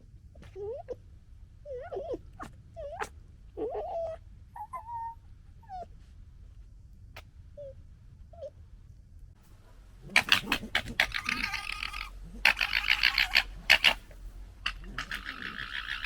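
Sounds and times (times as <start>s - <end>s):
fox cubs whining: 1.6s - 6.0s, 10.0s - 16.0s.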